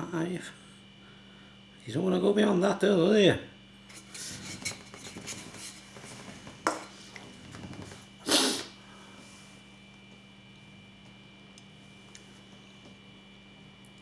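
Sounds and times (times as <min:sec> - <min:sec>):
short breathy noise: 0:08.2 - 0:08.8.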